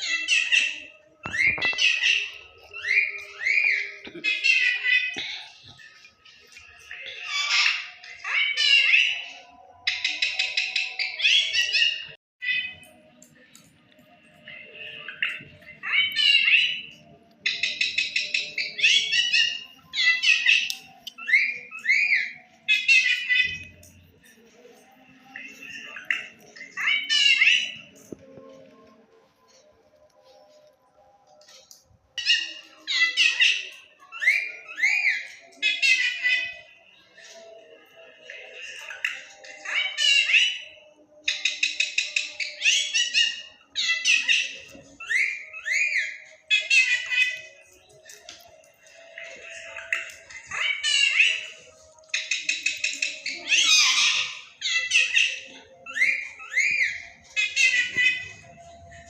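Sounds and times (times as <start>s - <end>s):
parrot calling: 14.7s - 23.9s, 38.4s - 48.2s, 48.9s - 59.0s
parrot chirping and whistling: 49.4s - 59.0s.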